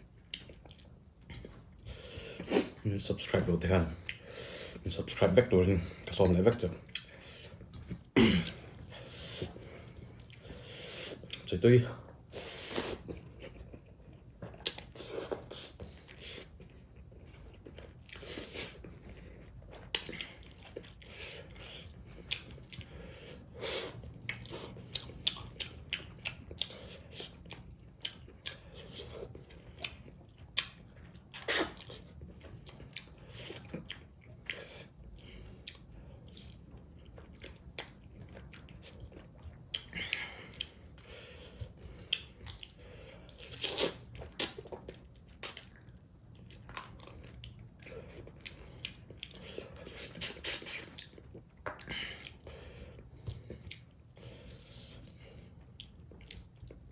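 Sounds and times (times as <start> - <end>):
chewing and crunching: 0.0 - 56.9
wet mouth clicks: 50.0 - 51.9.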